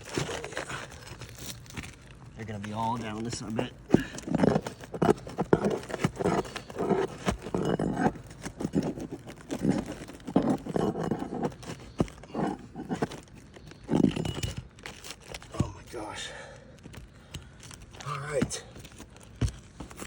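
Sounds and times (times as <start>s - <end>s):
rough rasping: 2.7s - 15.4s.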